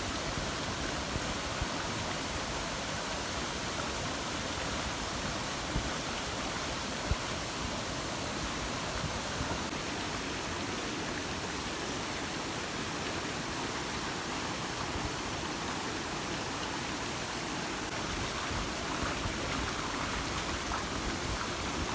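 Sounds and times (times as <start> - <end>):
waterfall pouring into pool: 0.0 - 21.9.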